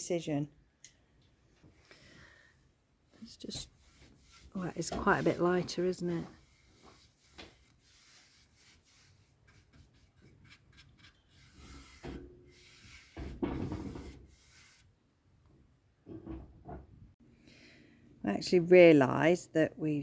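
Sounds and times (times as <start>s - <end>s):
scratchy rubbing on wood: 3.4s - 14.9s.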